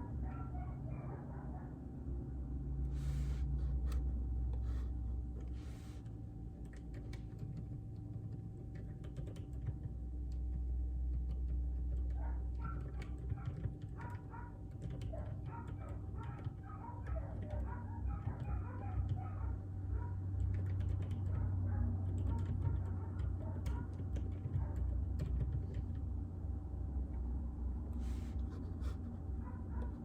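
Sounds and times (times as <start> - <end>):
mechanical keyboard typing: 6.5 - 19.2, 20.3 - 26.1.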